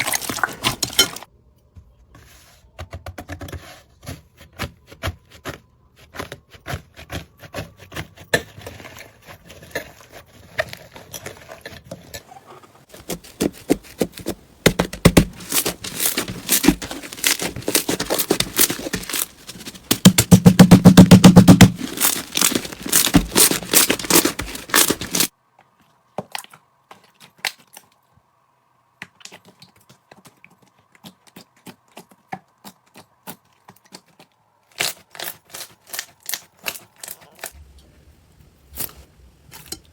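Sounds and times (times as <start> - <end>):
slime squelching: 0.0 - 1.3, 12.8 - 25.3.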